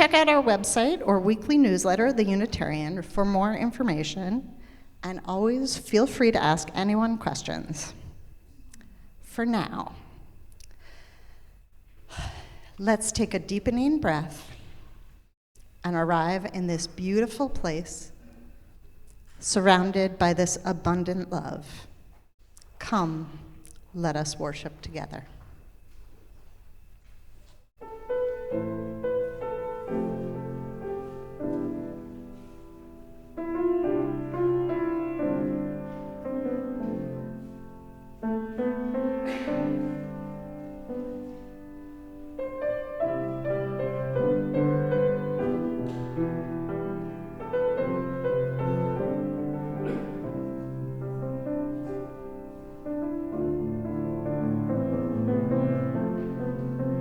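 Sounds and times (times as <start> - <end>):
slow classical piano music: 27.8 - 57.0.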